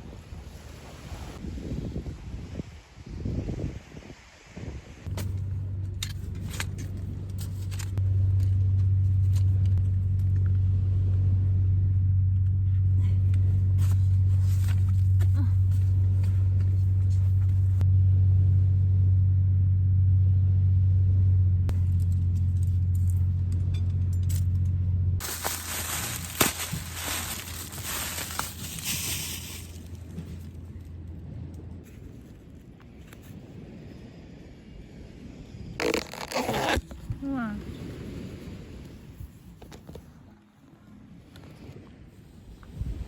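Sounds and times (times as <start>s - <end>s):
car interior drone: 5.1s - 28.8s.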